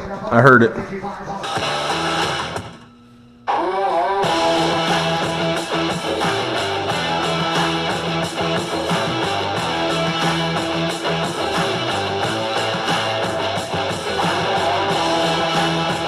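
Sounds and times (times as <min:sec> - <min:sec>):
guitar music over a beat: 0:04.2 - 0:16.0.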